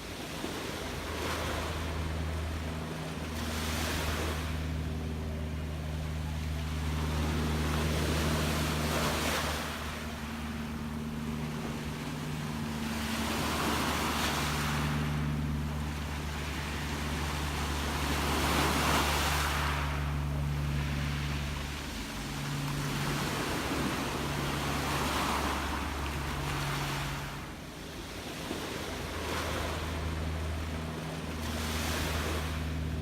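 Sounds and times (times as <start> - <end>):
ocean waves washing in: 0.0 - 33.0
steady low hum: 0.0 - 33.0.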